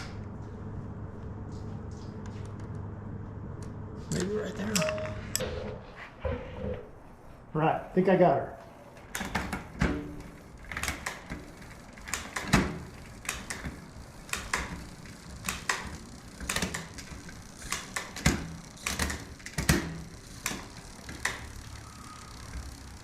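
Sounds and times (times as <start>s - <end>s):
bicycle drivetrain clicking: 8.8s - 23.0s.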